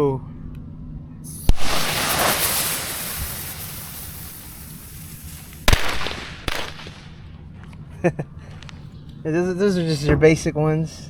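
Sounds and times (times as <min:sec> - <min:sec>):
firecracker fuse hiss: 0:01.3 - 0:07.2
firecracker bangs: 0:01.3 - 0:07.5.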